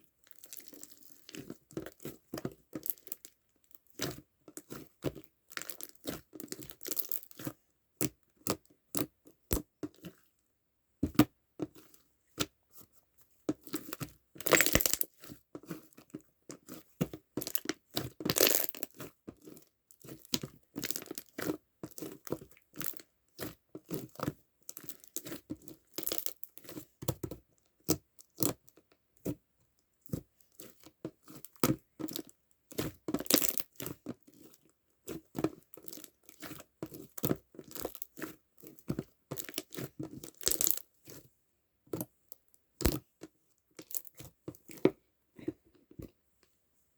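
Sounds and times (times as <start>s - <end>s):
hands squishing slime: 3.9s - 9.1s, 13.6s - 27.2s, 30.1s - 41.2s.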